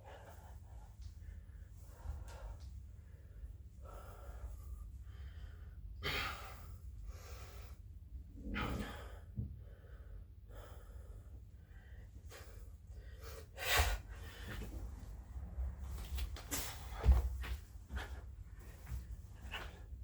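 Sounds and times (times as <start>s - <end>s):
person breathing hard: 0.0s - 15.1s.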